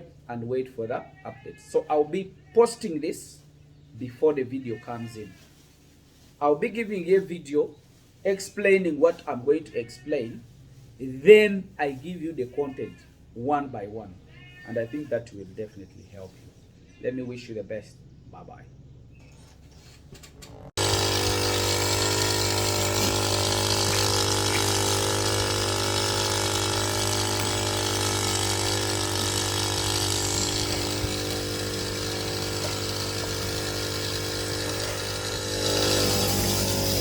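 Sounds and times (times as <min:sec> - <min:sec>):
machine humming: 0:20.5 - 0:37.0.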